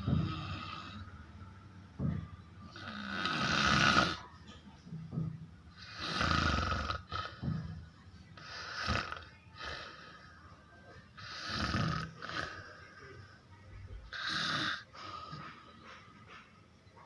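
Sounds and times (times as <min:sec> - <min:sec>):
person snoring: 0:00.0 - 0:01.1, 0:02.7 - 0:04.2, 0:05.8 - 0:07.4, 0:08.4 - 0:10.2, 0:11.2 - 0:13.2, 0:14.1 - 0:15.4.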